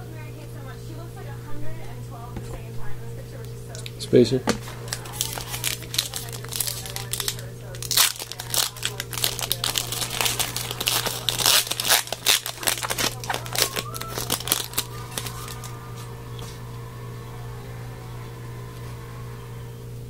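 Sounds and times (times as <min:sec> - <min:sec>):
steady low hum: 0:00.0 - 0:20.0
foil wrapper crinkling: 0:03.7 - 0:16.6.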